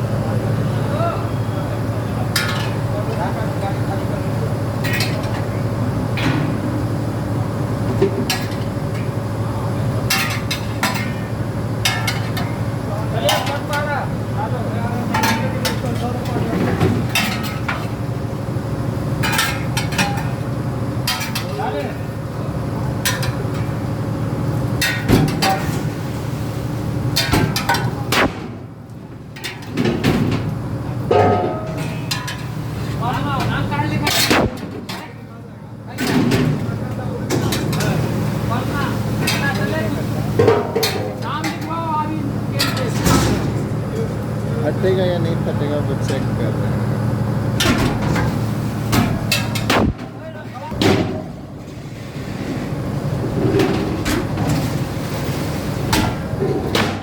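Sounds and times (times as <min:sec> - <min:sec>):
machinery hum: 0:00.0 - 0:57.0
sharp knocks and clatters: 0:31.1 - 0:32.5.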